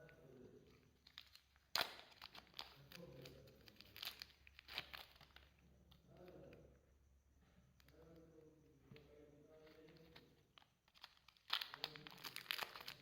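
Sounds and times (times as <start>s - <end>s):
slime crackling and crinkling: 0.9s - 5.6s, 9.6s - 13.0s.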